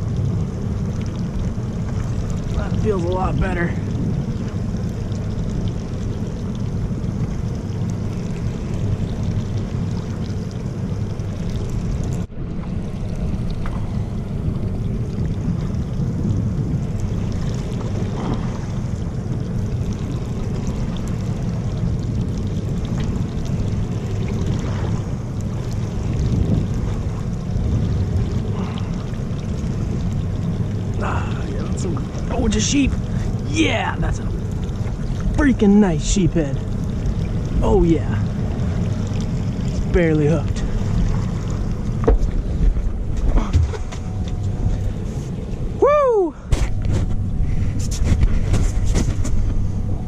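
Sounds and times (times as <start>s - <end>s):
boat and water noise: 0.0s - 50.0s
wind buffeting the microphone: 0.0s - 50.0s.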